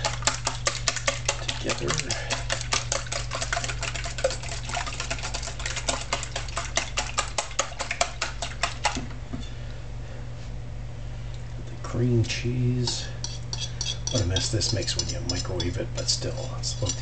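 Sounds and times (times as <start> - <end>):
whisk beating eggs in a bowl: 0.0 - 9.0, 12.8 - 17.0
steady low hum: 0.0 - 17.0.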